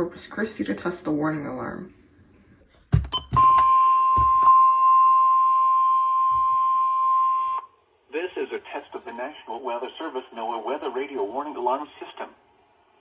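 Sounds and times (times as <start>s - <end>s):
steady alarm tone: 3.1s - 7.7s.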